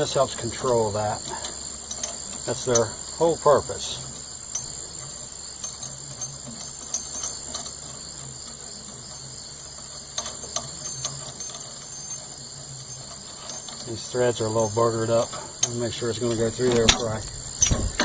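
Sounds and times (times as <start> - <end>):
high-pitched background hiss: 0.0 - 18.0
metallic clicks and clinks: 16.4 - 18.0.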